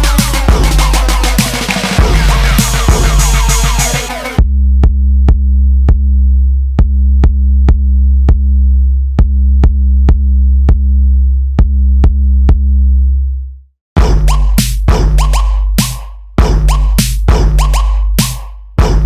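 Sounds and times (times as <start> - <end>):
drum machine clicks: 0.0 - 4.4, 14.2 - 16.0, 16.6 - 19.0
deep bass: 0.0 - 19.0.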